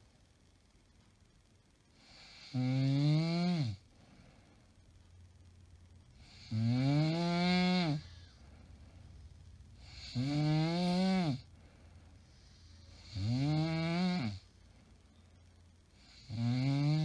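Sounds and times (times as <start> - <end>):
woman snoring: 2.0 - 3.8, 6.2 - 8.4, 9.8 - 11.5, 12.6 - 14.5, 16.0 - 17.0.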